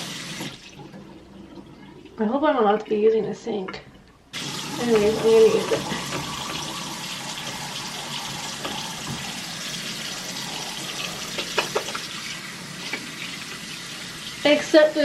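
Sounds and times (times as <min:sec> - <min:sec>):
faucet running into sink: 0:00.0 - 0:03.0, 0:03.7 - 0:15.0
hands washing under water: 0:04.4 - 0:14.4.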